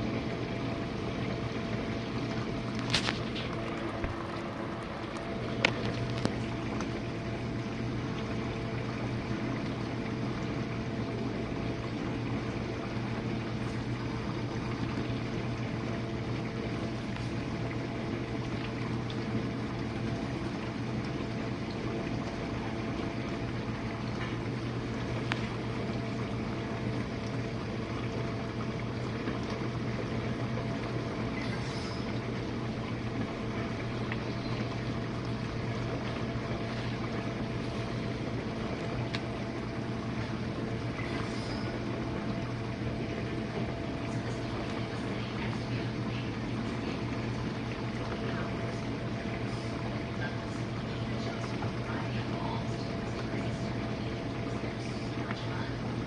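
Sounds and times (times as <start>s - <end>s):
dishwasher pump humming: 0.0s - 56.0s
water spraying and sloshing: 0.0s - 56.0s.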